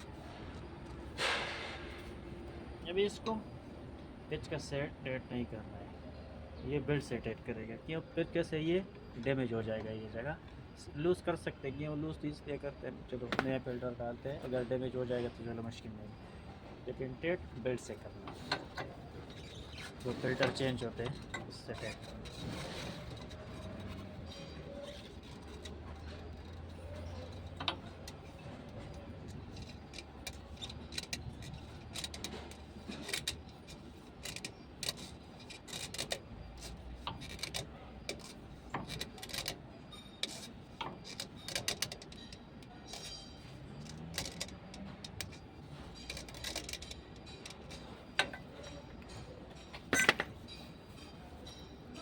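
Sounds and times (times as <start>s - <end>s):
metallic clicks of tools: 20.4s - 52.0s.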